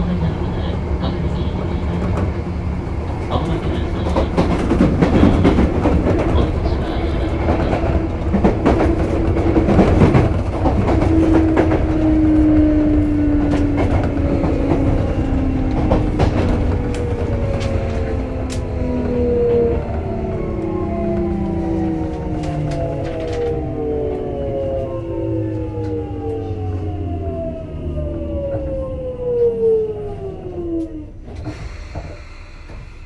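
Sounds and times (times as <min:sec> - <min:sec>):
train wheel and track rumble: 0:00.0 - 0:33.0
train motor whine: 0:08.1 - 0:33.0.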